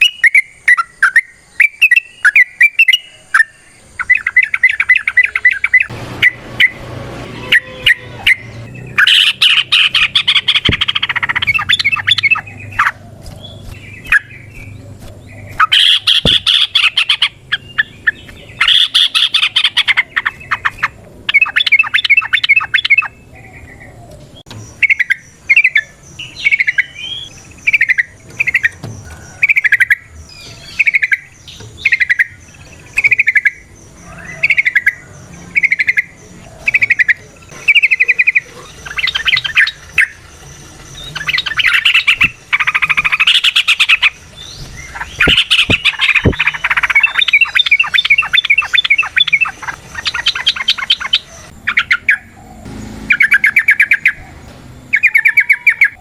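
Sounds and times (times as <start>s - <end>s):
bulbul singing: 0.0s - 56.0s.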